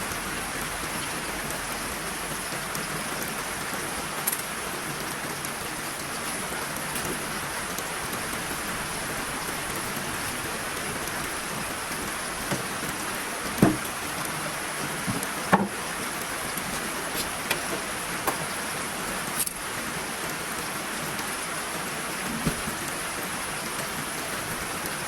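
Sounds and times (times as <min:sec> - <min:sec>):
heavy rain falling: 0:00.0 - 0:25.0
short sharp knocks: 0:13.5 - 0:13.9.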